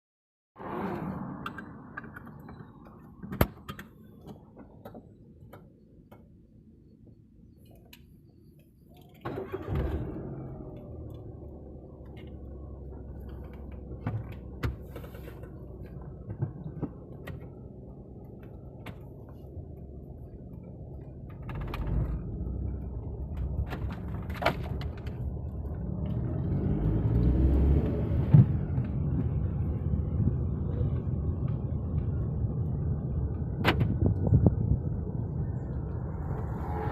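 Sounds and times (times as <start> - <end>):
car engine starting and running: 8.5 - 36.9.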